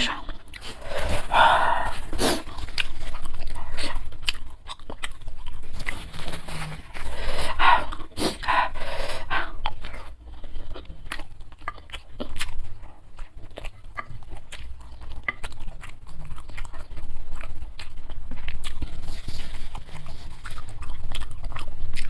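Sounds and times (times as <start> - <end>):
heavy huffing breaths: 0.0 - 2.6, 6.7 - 10.1
chewing and crunching: 0.0 - 22.0.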